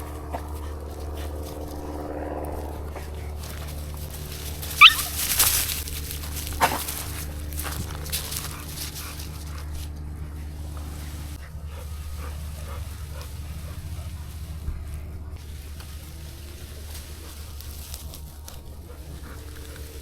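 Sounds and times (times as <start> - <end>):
dogs scuffling: 0.0 - 20.0
steady low hum: 0.0 - 20.0
dog yelping: 4.6 - 5.5.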